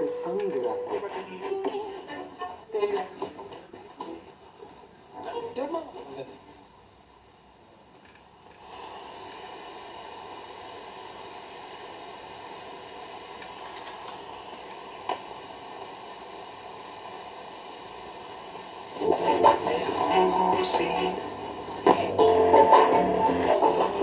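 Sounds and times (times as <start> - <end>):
music from radio: 0.0 - 6.3, 17.4 - 24.0
radio static hiss: 14.9 - 24.0.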